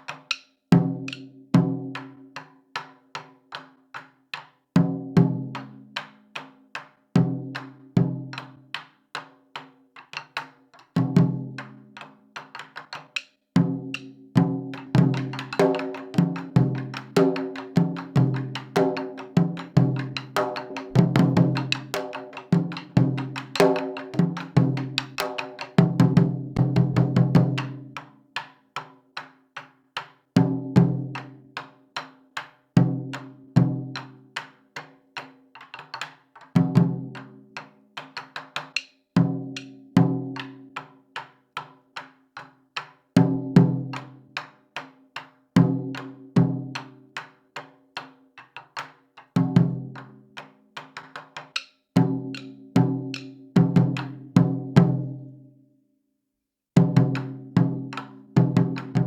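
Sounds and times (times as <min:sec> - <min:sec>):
taiko drums: 0:00.8 - 0:02.5, 0:13.6 - 0:27.9, 0:39.2 - 0:40.7, 0:52.0 - 0:55.1, 0:56.8 - 0:59.0.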